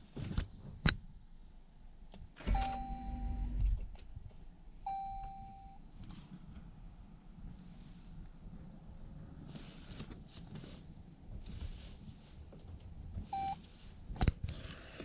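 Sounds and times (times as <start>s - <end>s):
electronic chime beeps: 2.6s - 3.5s, 4.9s - 5.8s.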